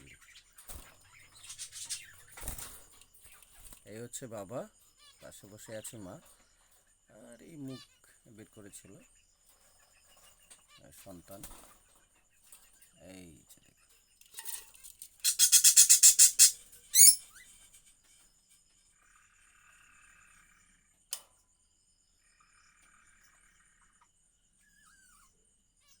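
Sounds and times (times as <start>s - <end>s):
soft bird chattering: 0.0s - 2.6s, 14.4s - 18.1s
budgerigars chirping: 0.0s - 3.4s, 15.2s - 17.4s.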